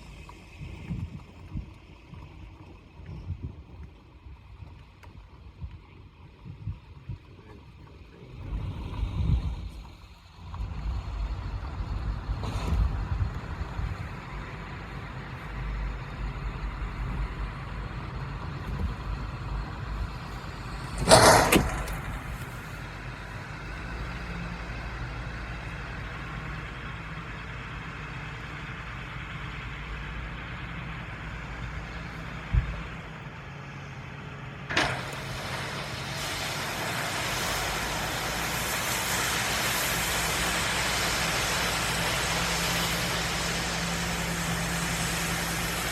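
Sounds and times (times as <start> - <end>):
heavy farm vehicle engines: 0.0 - 45.9
wind buffeting microphone: 10.6 - 22.8
sharp click: 21.0 - 22.5
steady hiss: 34.9 - 45.9.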